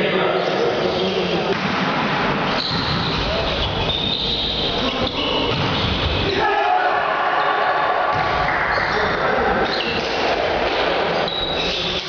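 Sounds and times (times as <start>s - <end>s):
sneakers squeaking on court: 2.4s - 6.3s, 11.2s - 12.0s
players shouting: 2.9s - 10.4s.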